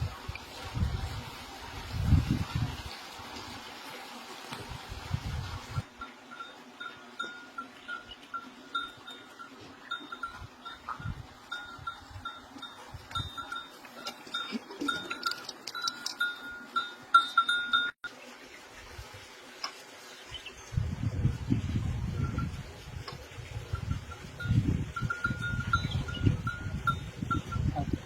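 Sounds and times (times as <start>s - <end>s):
livestock bell clanking: 5.9s - 18.0s, 23.6s - 28.0s.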